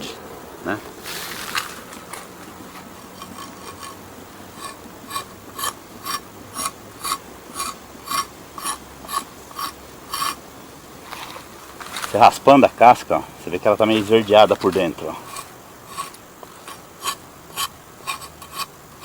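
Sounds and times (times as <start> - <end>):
bark scraped off firewood: 0.9 - 4.0, 13.9 - 19.0.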